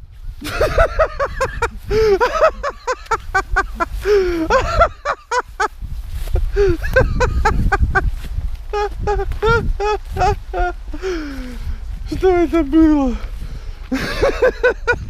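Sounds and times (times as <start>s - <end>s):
people crying out and yelping: 8.7s - 11.0s.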